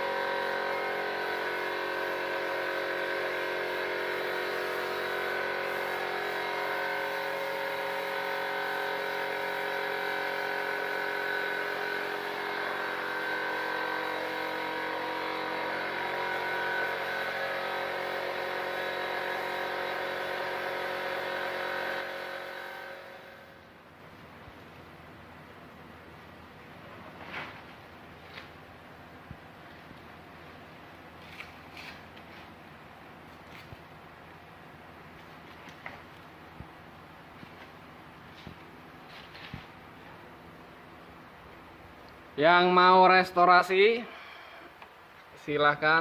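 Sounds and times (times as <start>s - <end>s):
power tool motor running: 0.0s - 23.6s.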